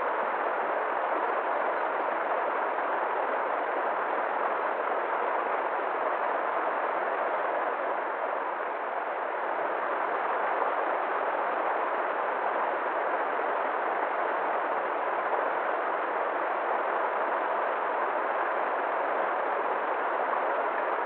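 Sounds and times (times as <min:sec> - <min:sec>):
river water flowing: 0:00.0 - 0:21.0.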